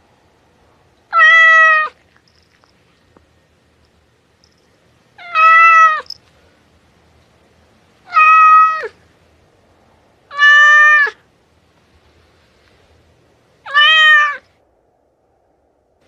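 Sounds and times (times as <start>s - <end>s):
cat meowing: 1.1s - 2.0s, 5.2s - 6.1s, 8.0s - 9.0s, 10.3s - 11.2s, 13.6s - 14.5s.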